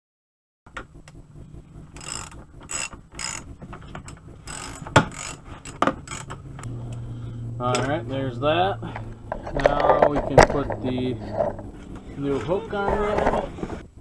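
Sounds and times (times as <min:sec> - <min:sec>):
ratchet wrench clicking: 0:01.9 - 0:07.0
sharp metallic clicks: 0:01.9 - 0:07.1.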